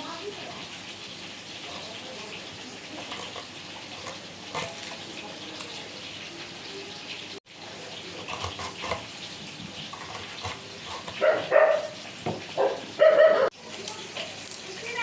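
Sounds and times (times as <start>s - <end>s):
frying sizzle: 0.0s - 15.0s
dog yelping: 11.2s - 12.0s, 12.6s - 13.5s.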